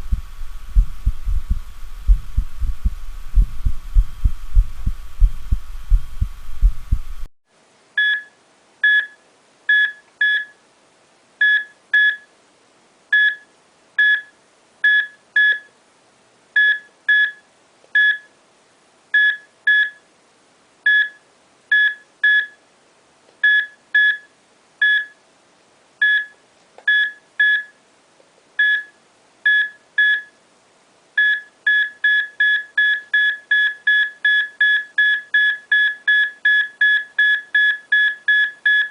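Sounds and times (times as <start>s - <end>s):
heartbeat thumps: 0.0s - 7.3s.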